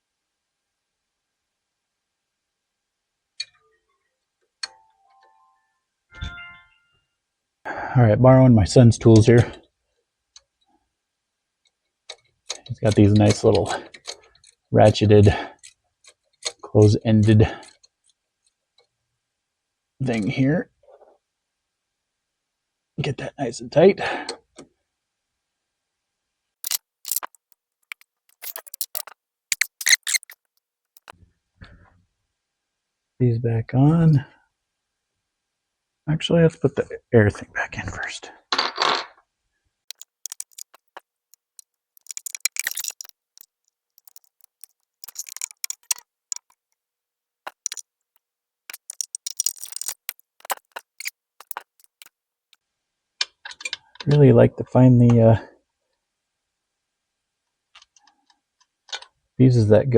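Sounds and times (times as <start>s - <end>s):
ratcheting wrench clicking: 26.6s - 30.4s, 39.9s - 43.1s, 44.0s - 46.5s, 47.5s - 47.8s, 48.7s - 52.1s.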